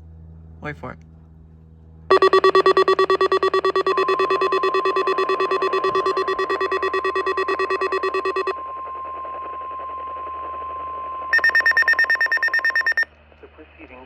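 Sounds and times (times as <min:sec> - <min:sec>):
rapid electronic beeping: 0:02.1 - 0:08.6, 0:11.4 - 0:13.0
steady warning alarm tone: 0:02.1 - 0:08.6, 0:11.3 - 0:13.0.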